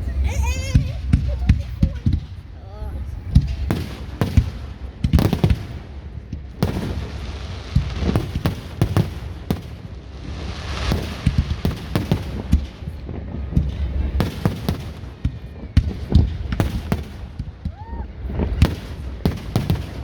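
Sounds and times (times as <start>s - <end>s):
fireworks bangs and booms: 0.0s - 20.0s
fireworks crackling: 0.0s - 20.0s.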